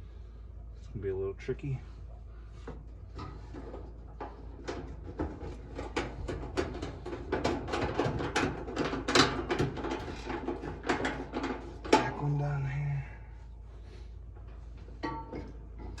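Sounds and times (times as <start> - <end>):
steady low hum: 0.0 - 16.0
sheet metal cover clattering: 3.1 - 12.2, 14.8 - 16.0.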